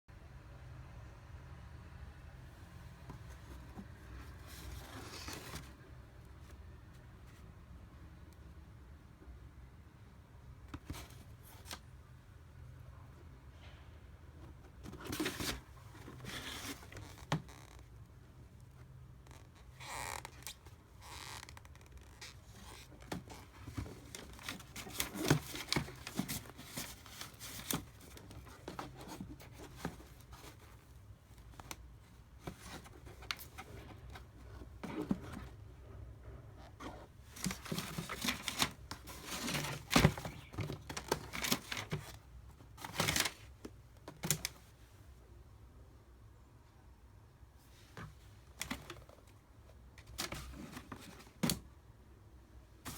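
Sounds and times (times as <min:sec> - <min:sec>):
packaging rustling and crinkling: 0:19.7 - 0:35.4, 0:36.8 - 0:43.5.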